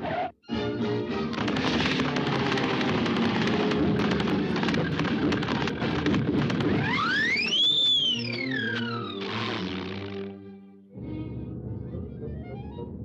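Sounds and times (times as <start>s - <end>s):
rapid percussive clatter: 1.3s - 7.2s
cartoon orchestral music: 11.0s - 13.0s.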